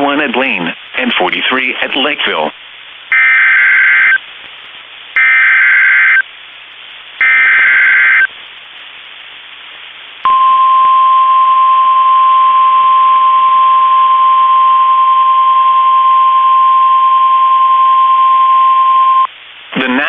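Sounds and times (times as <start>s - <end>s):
digital data bursts: 3.1s - 4.2s, 5.2s - 6.2s, 7.2s - 8.3s
steady warning alarm tone: 3.1s - 4.2s, 5.2s - 6.2s, 7.2s - 8.3s.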